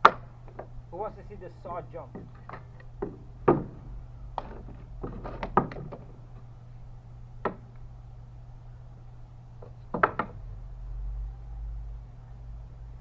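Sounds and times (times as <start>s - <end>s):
wooden boards knocking: 0.0s - 6.5s, 7.4s - 7.9s, 9.6s - 10.5s.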